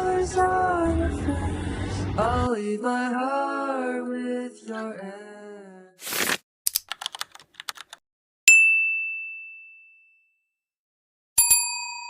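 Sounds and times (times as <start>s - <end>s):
keyboard typing clicks: 6.7s - 8.0s
ding: 8.5s - 10.6s, 11.4s - 12.0s
bell-like chime: 11.4s - 12.0s.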